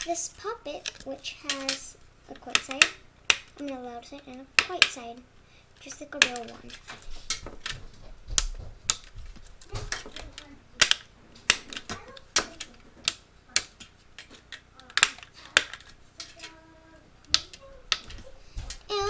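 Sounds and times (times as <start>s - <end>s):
fidget toy popping: 5.9s - 16.4s.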